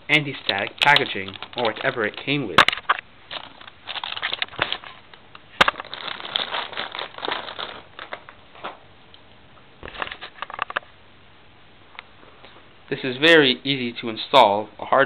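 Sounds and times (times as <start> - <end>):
plastic bag crinkling: 0.2 - 8.8.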